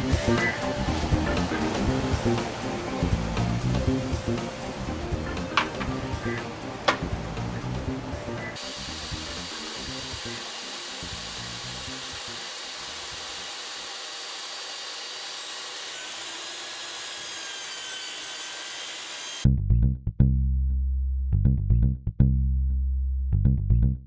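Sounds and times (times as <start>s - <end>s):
power tool working wood: 8.6s - 19.4s.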